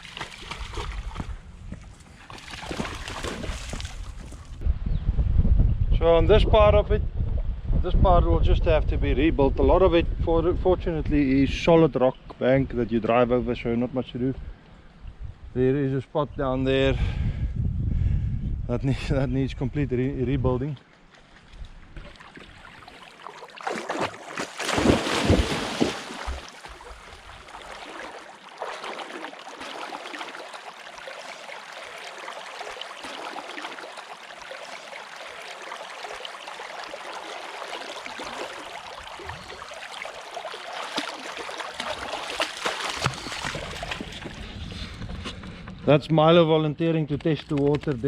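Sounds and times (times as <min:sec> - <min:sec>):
river water rushing: 0:22.8 - 0:44.0.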